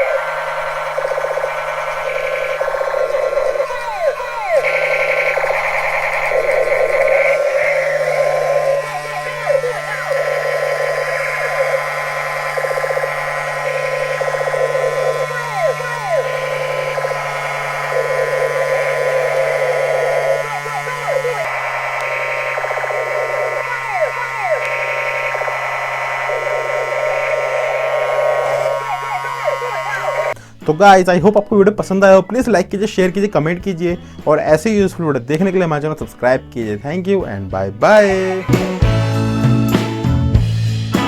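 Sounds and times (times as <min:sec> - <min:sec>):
toy gun electronic alarm effect: 0:00.0 - 0:30.4.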